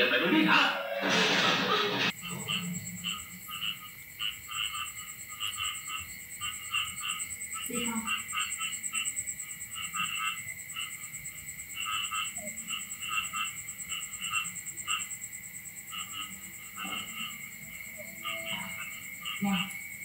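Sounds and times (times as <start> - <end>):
whistle-like tone: 0.4 - 2.0
frog-like croaks: 2.1 - 20.0.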